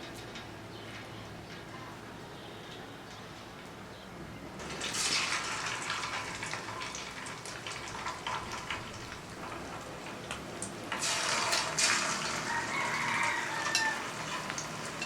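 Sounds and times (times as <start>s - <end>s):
food sizzling in hot oil: 4.6s - 15.0s
oil popping: 4.6s - 15.0s.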